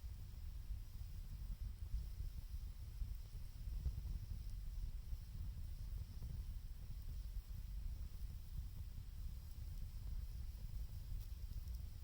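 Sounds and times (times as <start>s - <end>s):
wind rumbling on microphone: 0.0s - 12.0s
wood fire crackling: 9.1s - 12.0s.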